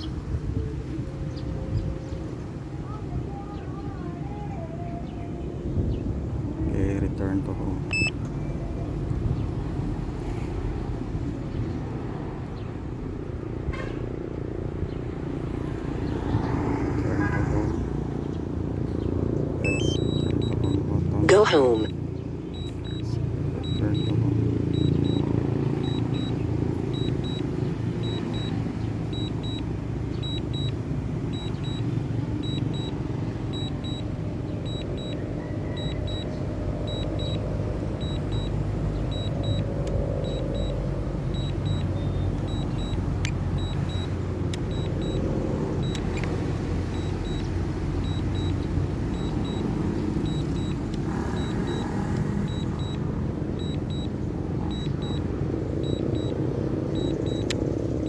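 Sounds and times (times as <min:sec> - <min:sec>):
wind buffeting microphone: 0:00.0 - 0:03.5, 0:05.2 - 0:07.4
faint high double beeps: 0:07.9 - 0:08.2, 0:19.6 - 0:44.1, 0:44.7 - 0:46.3, 0:46.9 - 0:57.5.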